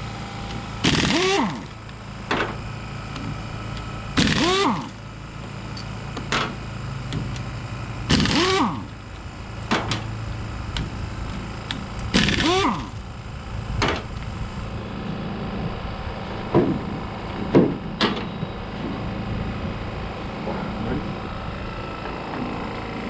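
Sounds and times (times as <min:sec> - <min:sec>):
steady low hum: 0:00.0 - 0:23.0
power wrench spinning bolts: 0:00.9 - 0:01.8, 0:04.2 - 0:05.0, 0:08.1 - 0:08.9.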